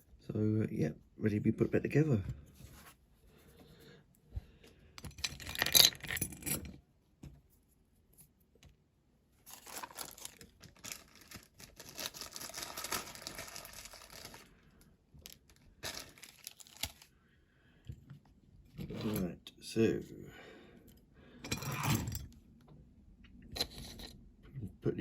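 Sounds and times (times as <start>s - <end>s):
material rustling and tearing: 9.4s - 14.6s, 15.3s - 17.1s.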